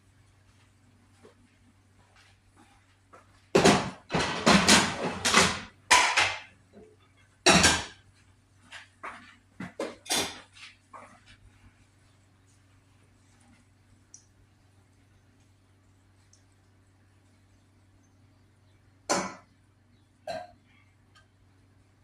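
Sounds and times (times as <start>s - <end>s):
pots and dishes clattering: 3.6s - 8.0s, 9.1s - 11.1s.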